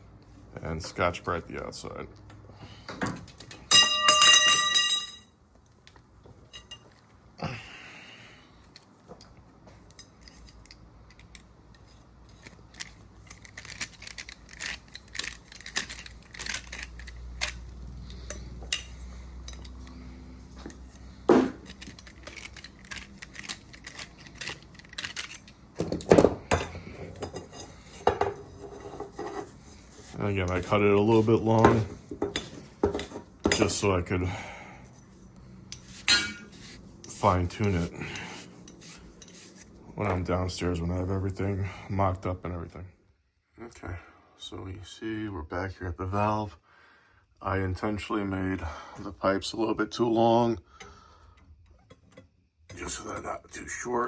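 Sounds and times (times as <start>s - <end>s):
light metal clinks: 3.7s - 5.3s
metal scraping and rubbing: 11.8s - 34.1s, 34.8s - 40.3s.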